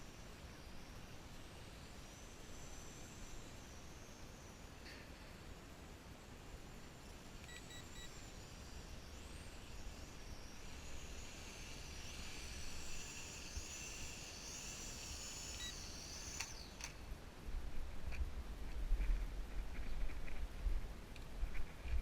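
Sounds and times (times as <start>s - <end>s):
toy quadcopter motors whining: 0.0s - 17.2s
short beeps: 7.4s - 8.2s
sharp clicks: 15.5s - 17.0s.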